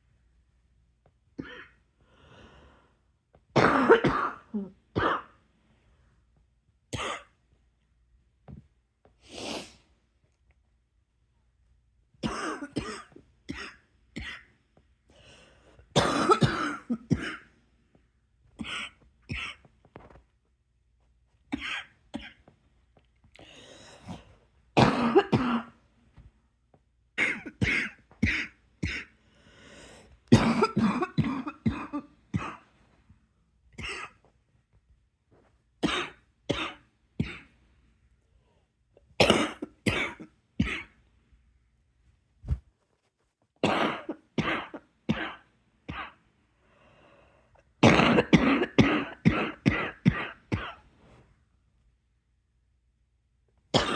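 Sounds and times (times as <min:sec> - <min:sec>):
soft breaths: 0:01.9 - 0:03.3, 0:14.7 - 0:16.0, 0:22.4 - 0:24.8, 0:29.1 - 0:30.3, 0:46.4 - 0:47.8
person coughing hard: 0:03.6 - 0:05.4, 0:07.0 - 0:07.4, 0:12.2 - 0:14.5, 0:16.0 - 0:17.5, 0:18.6 - 0:19.7, 0:21.5 - 0:22.4, 0:24.8 - 0:25.8, 0:27.2 - 0:29.2, 0:30.3 - 0:32.7, 0:33.8 - 0:34.3, 0:35.8 - 0:37.6, 0:39.2 - 0:41.0, 0:43.6 - 0:46.2, 0:47.8 - 0:50.8.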